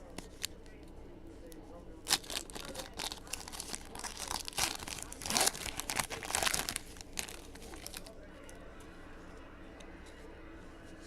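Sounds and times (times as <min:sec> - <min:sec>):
card packs crinkling: 0:00.0 - 0:00.7, 0:02.0 - 0:08.2.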